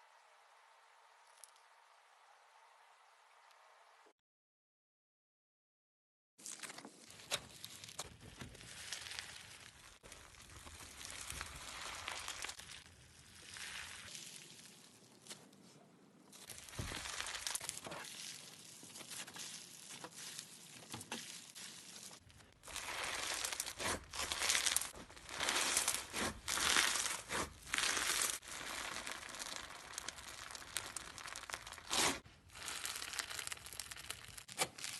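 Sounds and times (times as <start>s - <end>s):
slime popping and crackling: 7.2s - 15.4s, 16.4s - 34.9s.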